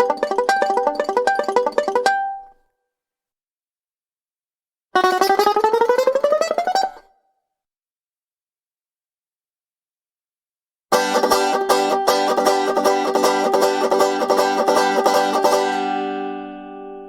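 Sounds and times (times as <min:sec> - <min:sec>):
banjo picking: 0:00.0 - 0:02.6, 0:05.0 - 0:07.1, 0:10.9 - 0:17.0.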